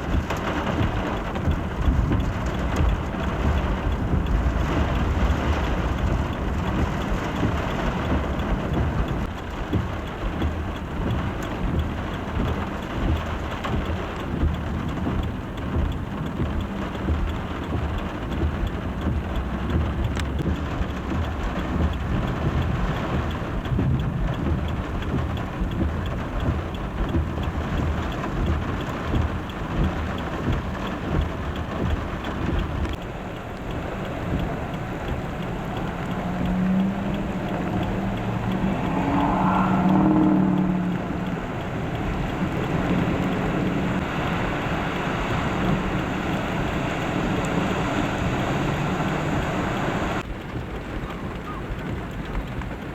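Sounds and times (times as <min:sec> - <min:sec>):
low rumble: 0:00.0 - 0:50.3
torrential rain pouring: 0:00.0 - 0:52.9.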